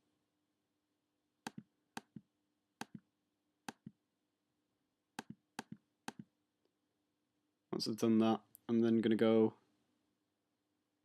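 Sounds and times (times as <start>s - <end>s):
computer mouse clicks: 1.5s - 2.2s, 5.2s - 6.3s.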